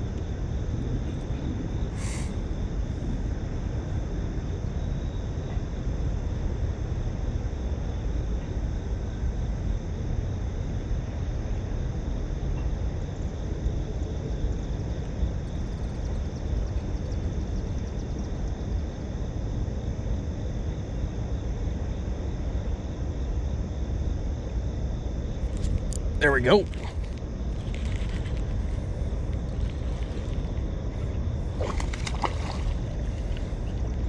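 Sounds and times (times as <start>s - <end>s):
low rumbling noise: 24.5s - 34.0s.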